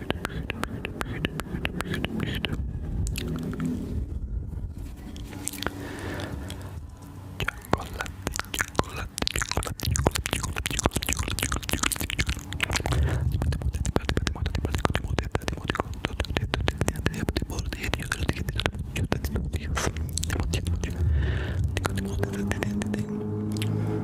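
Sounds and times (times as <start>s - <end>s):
wet mouth clicks and smacks: 0.0s - 3.8s, 5.4s - 6.6s, 7.4s - 21.0s, 21.7s - 23.7s
low rumbling thuds: 2.6s - 5.0s, 12.8s - 15.2s, 18.7s - 22.7s.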